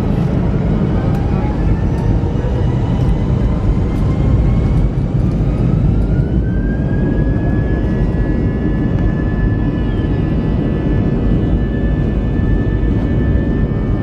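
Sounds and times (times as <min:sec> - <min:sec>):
jet engines running up: 0:00.0 - 0:14.0.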